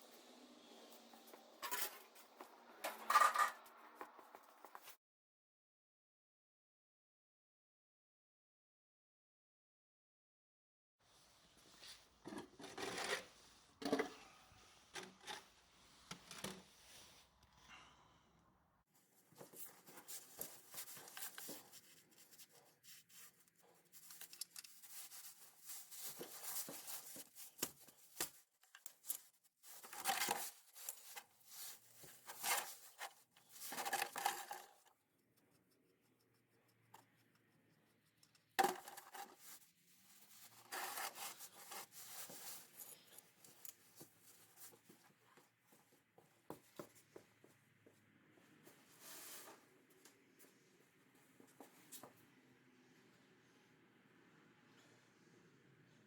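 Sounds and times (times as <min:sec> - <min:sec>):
scraping and rustling handling noises: 0:11.6 - 0:17.3, 0:19.0 - 0:34.9, 0:38.4 - 0:47.5.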